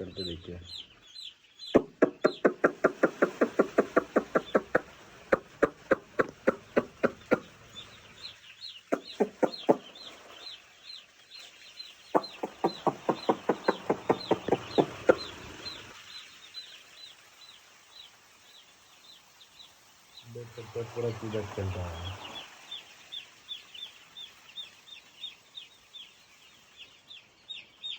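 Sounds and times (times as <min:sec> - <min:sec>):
chicks peeping: 0:00.0 - 0:27.9
person clucking like a hen: 0:01.8 - 0:07.6, 0:08.9 - 0:09.8, 0:12.2 - 0:15.5.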